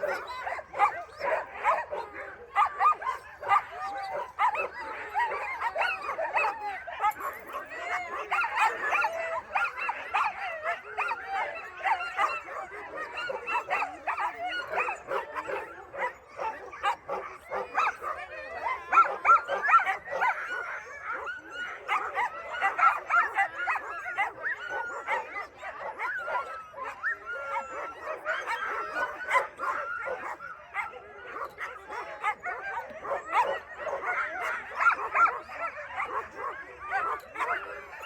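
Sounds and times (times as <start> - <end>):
dogs barking and yipping: 0.0 - 38.0.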